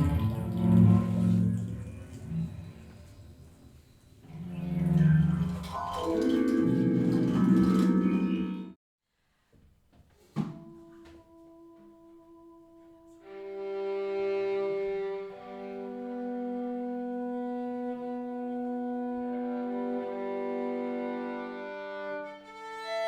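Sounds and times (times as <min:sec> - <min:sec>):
cello and violin bowed notes: 0:10.8 - 0:23.0.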